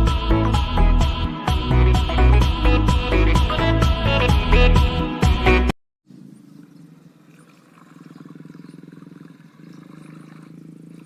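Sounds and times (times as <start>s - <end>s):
background music: 0.0s - 5.7s.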